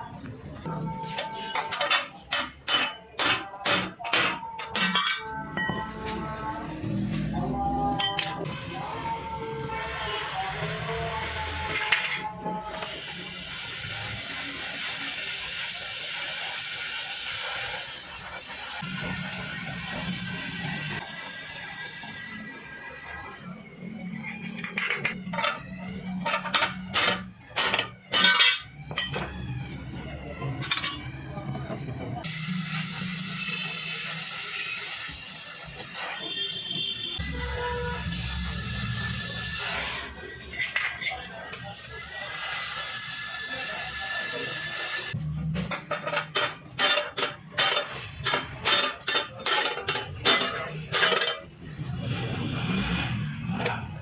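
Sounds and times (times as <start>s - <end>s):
metal clanking on metal: 26.2s - 29.2s, 45.6s - 51.5s.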